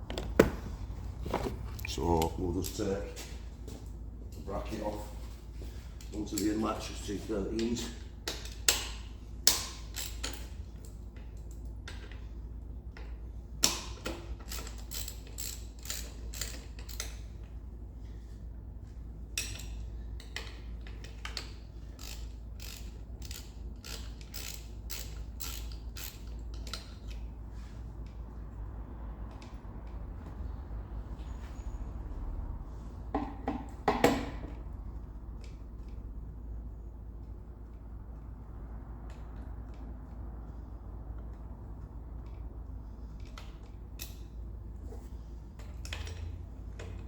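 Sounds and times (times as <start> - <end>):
socket ratchet clicking: 21.3 - 27.2.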